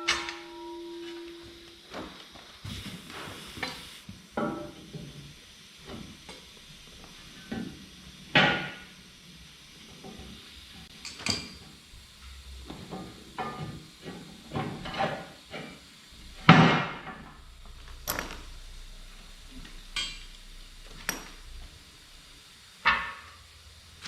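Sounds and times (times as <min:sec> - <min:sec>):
metal clanks and knocks: 0:12.2 - 0:23.4.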